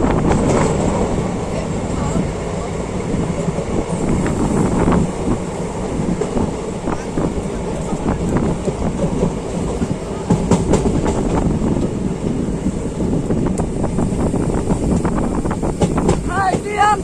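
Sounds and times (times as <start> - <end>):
train rumbling on track: 0.0 - 17.0
train wheels clacking: 3.1 - 12.4, 13.0 - 17.0.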